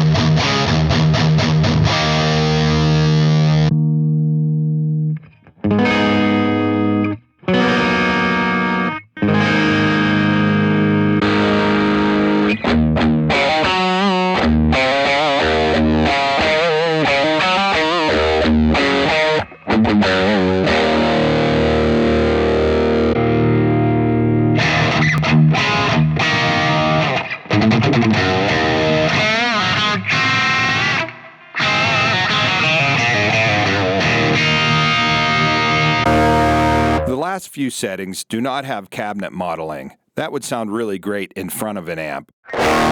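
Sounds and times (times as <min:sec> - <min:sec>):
distorted electric guitar: 0:00.0 - 0:37.3, 0:42.4 - 0:42.9.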